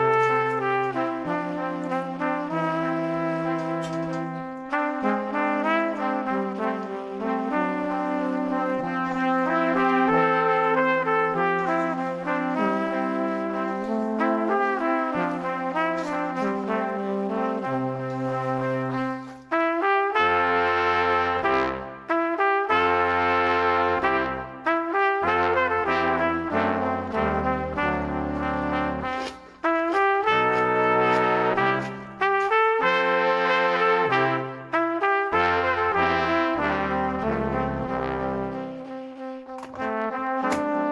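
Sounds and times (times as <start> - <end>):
brass music with held chords: 0.0 - 40.9
instrumental melody over bass: 25.4 - 29.2, 35.3 - 40.1.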